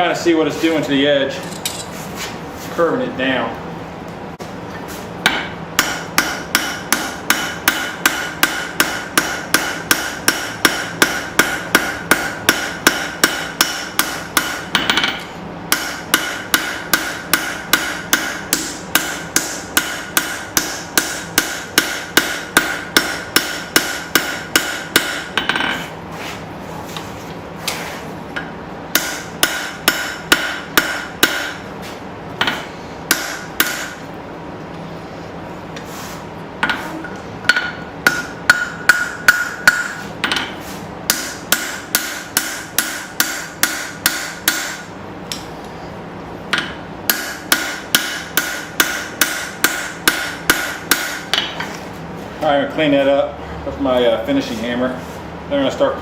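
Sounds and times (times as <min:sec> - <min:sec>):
hammer striking steel on anvil: 0:05.2 - 0:25.9, 0:28.4 - 0:31.6, 0:32.4 - 0:34.0, 0:36.6 - 0:45.5, 0:46.5 - 0:51.6.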